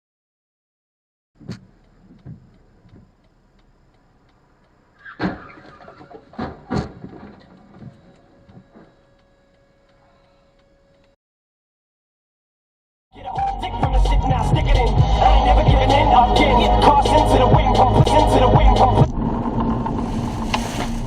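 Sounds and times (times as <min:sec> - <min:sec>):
vehicle collision bangs: 0:05.0 - 0:08.0
faint steady tone: 0:07.4 - 0:11.2.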